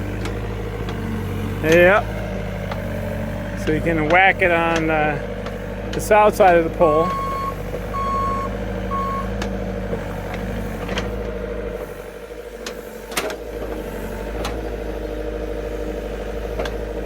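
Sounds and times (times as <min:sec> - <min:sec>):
heavy machine engine running: 0:00.0 - 0:17.0
reversing beeper: 0:06.9 - 0:09.4.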